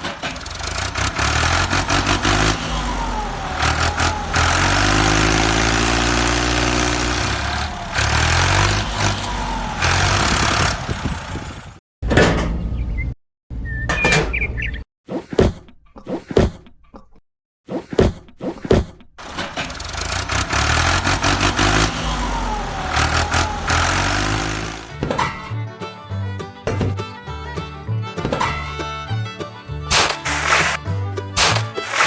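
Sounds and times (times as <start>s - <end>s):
small tractor engine running: 0.0s - 11.8s, 18.9s - 25.0s
short knocks: 17.8s - 19.8s.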